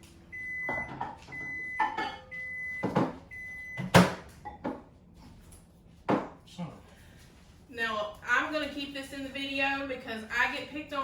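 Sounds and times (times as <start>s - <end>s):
microwave oven beeping: 0.0s - 4.6s.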